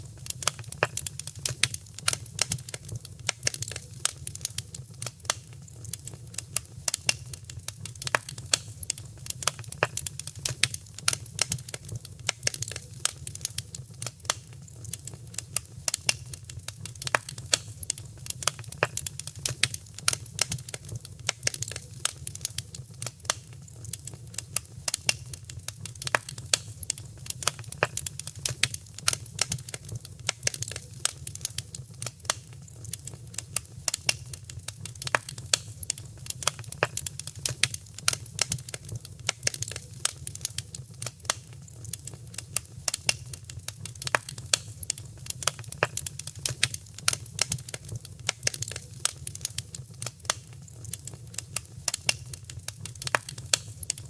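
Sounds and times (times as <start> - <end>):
low rumble of flames: 0.0 - 54.0
wood fire crackling: 0.0 - 54.0.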